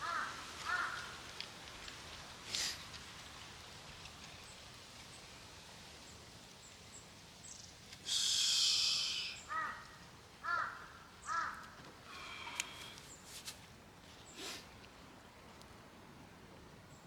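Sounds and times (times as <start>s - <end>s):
loud rustling hiss: 0.5s - 6.0s, 7.4s - 9.5s, 12.2s - 14.7s.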